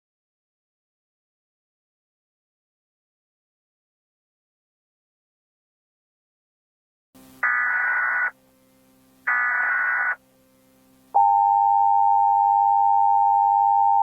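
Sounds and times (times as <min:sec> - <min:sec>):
screechy digital data tones: 0:07.4 - 0:08.4, 0:09.3 - 0:10.2
two-tone attention signal: 0:07.4 - 0:08.4, 0:09.3 - 0:10.2.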